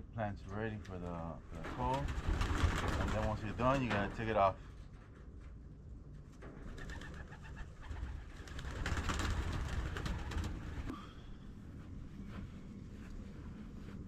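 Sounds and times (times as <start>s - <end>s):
dove cooing: 6.6s - 8.4s.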